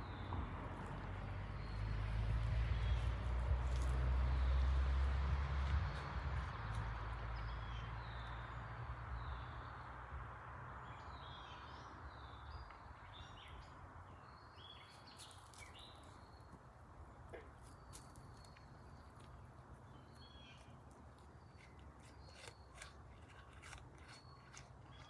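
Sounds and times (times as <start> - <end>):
small birds chirping: 10.8 - 25.0.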